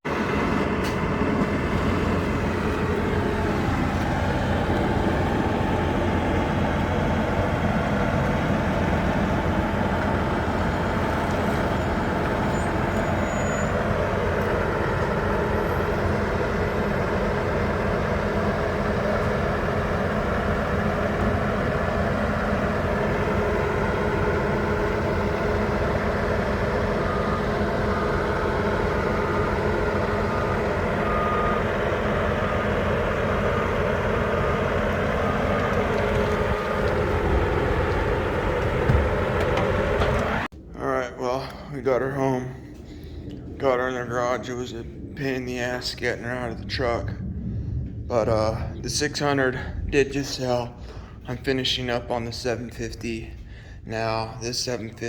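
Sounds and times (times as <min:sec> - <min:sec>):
truck engine running: 0:00.0 - 0:40.5
reversing beeper: 0:09.3 - 0:20.5, 0:23.2 - 0:40.5.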